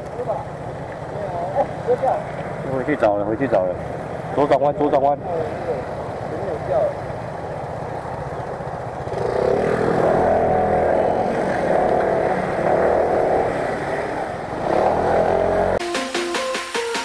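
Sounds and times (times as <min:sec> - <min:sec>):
motor scooter engine revving: 0:00.0 - 0:15.8.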